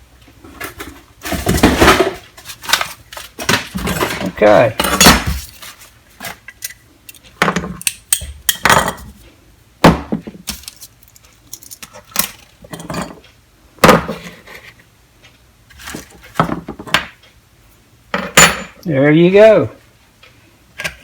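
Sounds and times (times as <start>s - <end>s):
tool handling noise: 0.4s - 9.2s, 9.9s - 13.2s
metal tools clattering: 3.4s - 5.6s, 18.2s - 18.8s.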